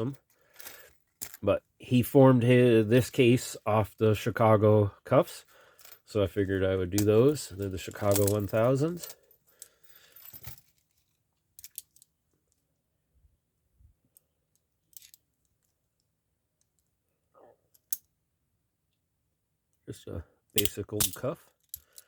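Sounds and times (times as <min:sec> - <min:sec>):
handcuffs clicking and jingling: 0:07.0 - 0:10.6, 0:20.6 - 0:22.0.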